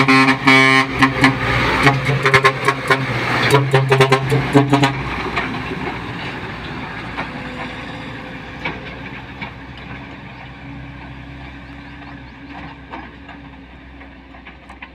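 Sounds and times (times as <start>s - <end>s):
truck engine humming: 0.0s - 14.9s.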